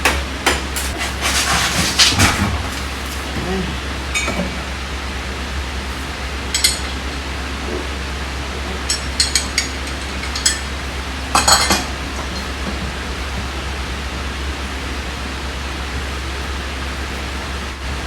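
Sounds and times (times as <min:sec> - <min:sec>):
steady hum and hiss: 0:00.0 - 0:18.0
metal tools clinking: 0:04.1 - 0:04.7, 0:06.5 - 0:07.2, 0:08.8 - 0:12.9.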